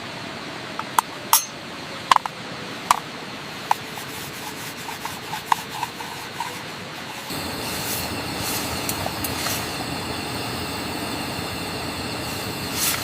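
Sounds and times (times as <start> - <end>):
steady hiss: 0.0 - 13.0
sharp rubbing scrapes: 3.7 - 9.7.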